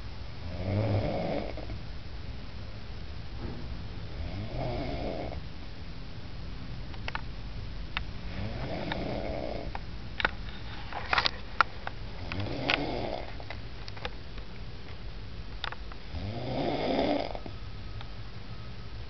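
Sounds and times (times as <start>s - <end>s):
snoring: 0.4s - 1.7s, 4.1s - 5.4s, 8.3s - 9.7s, 12.2s - 13.3s, 16.1s - 17.5s.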